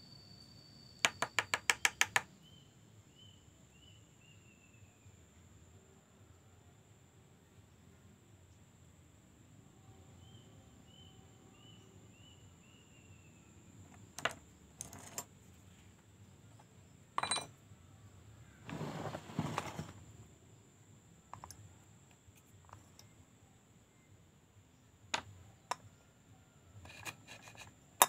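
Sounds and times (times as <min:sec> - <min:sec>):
metallic clinks of tools: 0:17.2 - 0:17.5.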